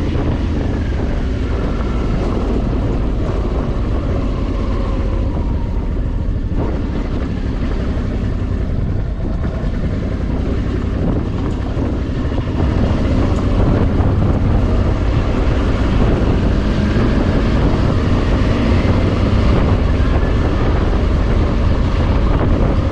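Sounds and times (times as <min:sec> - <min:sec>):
motorcycle engine running: 0:00.0 - 0:22.9
wind rushing over microphone: 0:00.0 - 0:22.9.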